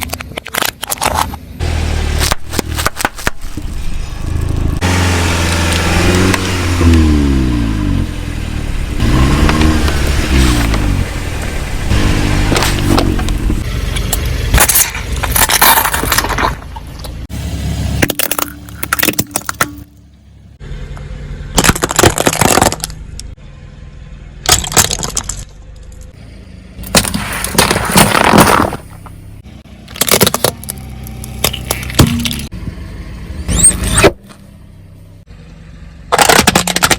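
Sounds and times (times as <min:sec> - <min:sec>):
car engine rumble: 0:00.0 - 0:36.9
tyre crushing brittle objects: 0:02.0 - 0:04.0, 0:14.0 - 0:17.0, 0:21.6 - 0:23.3, 0:24.4 - 0:25.5, 0:26.8 - 0:29.2, 0:29.9 - 0:32.5, 0:36.1 - 0:36.9.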